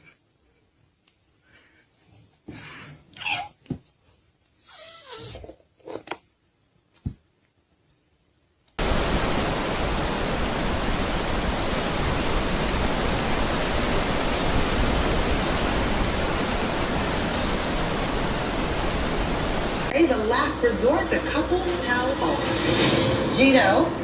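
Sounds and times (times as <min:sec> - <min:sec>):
steady loud rushing noise: 0:08.8 - 0:19.9.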